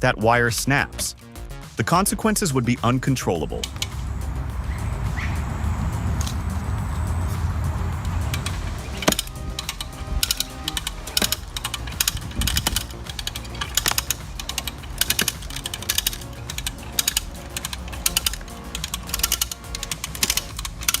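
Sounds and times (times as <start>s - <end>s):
faint background music: 0.0s - 21.0s
ratcheting mechanical clicks: 3.5s - 4.4s, 5.9s - 21.0s.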